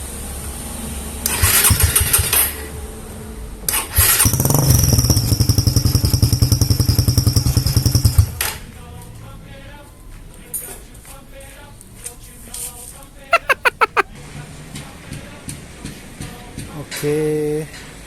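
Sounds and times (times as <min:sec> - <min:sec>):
motorcycle starter cranking: 0:01.4 - 0:02.4.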